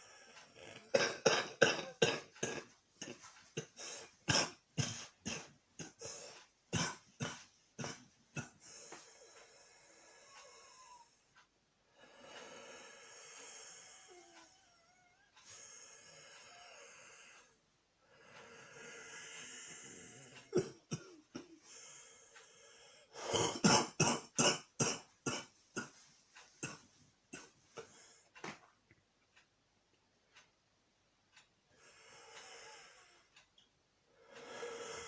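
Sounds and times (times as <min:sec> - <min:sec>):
man coughing: 0:01.0 - 0:06.1, 0:20.5 - 0:21.6, 0:23.2 - 0:26.0
long drawn breaths: 0:08.6 - 0:11.2, 0:11.9 - 0:14.6, 0:15.4 - 0:20.5, 0:31.7 - 0:33.4, 0:34.1 - 0:35.0.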